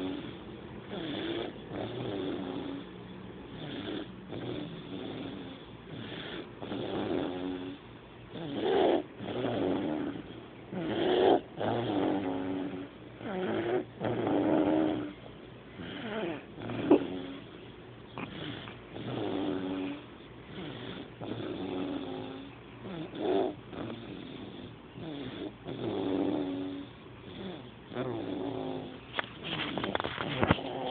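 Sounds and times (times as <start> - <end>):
person snoring: 8.4 - 15.2, 15.8 - 17.5, 18.2 - 30.9.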